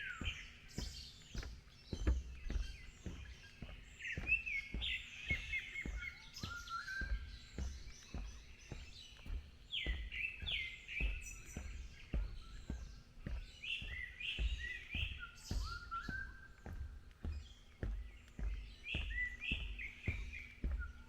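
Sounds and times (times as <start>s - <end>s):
footsteps on forest path: 0.0s - 21.0s
wild birds singing: 0.0s - 21.0s.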